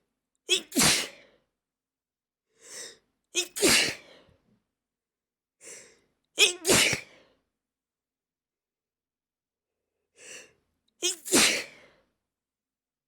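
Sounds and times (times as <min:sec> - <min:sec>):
person sneezing: 0:00.5 - 0:01.3, 0:03.4 - 0:04.2, 0:06.4 - 0:07.2, 0:11.0 - 0:12.0
short in-breath: 0:03.7 - 0:04.5, 0:05.6 - 0:07.5, 0:11.4 - 0:12.2.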